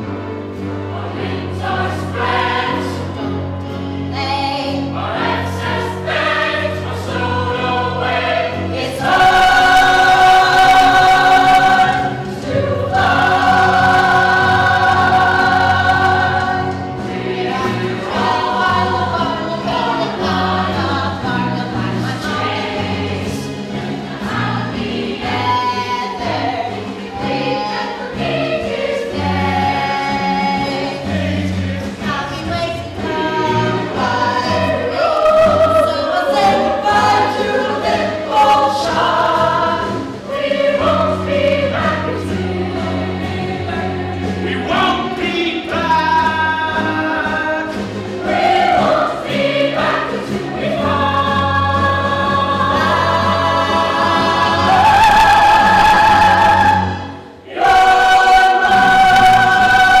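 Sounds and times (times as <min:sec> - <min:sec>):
chorus singing: 0:00.0 - 1:00.0
instrumental accompaniment: 0:00.0 - 1:00.0.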